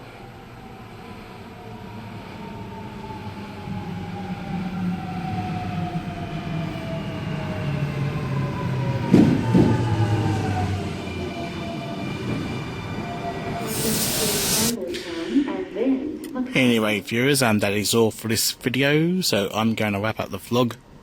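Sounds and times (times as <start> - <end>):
electric train motor whine: 0.0 - 14.8.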